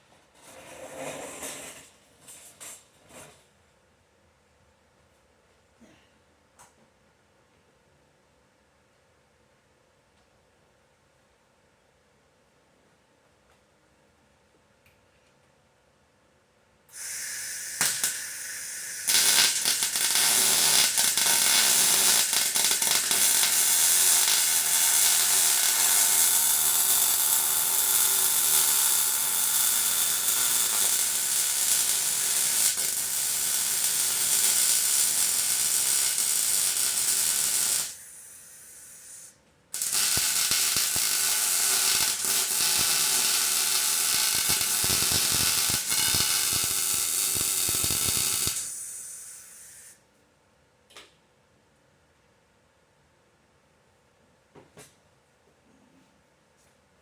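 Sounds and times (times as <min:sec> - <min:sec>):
arc welding crackling sizzle: 0:16.9 - 0:50.0.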